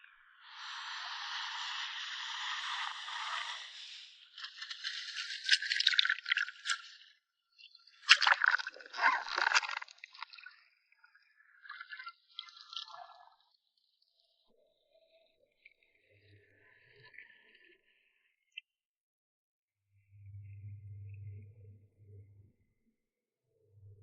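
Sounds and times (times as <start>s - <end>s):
water splashing: 8.0s - 10.5s.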